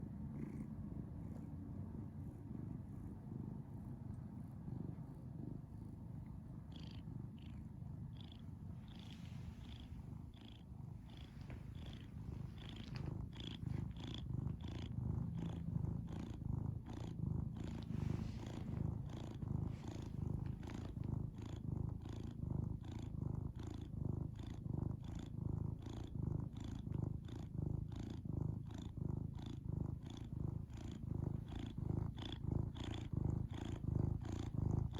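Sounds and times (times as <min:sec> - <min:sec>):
cat purring: 0:00.0 - 0:34.9.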